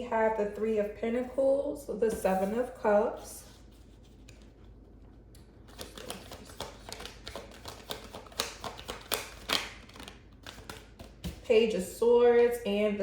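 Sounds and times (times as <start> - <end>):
cards clicking on a table: 5.7 - 11.4.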